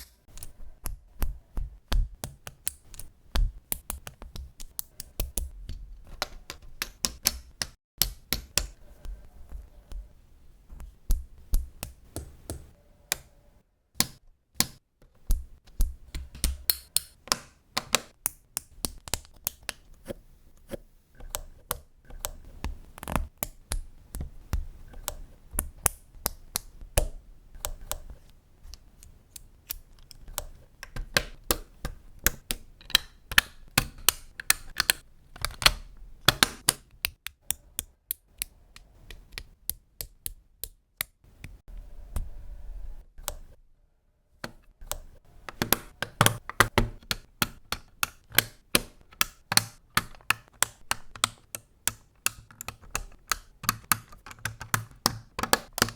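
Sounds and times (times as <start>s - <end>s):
plastic building pieces clicking: 28.7s - 41.5s, 44.4s - 55.9s.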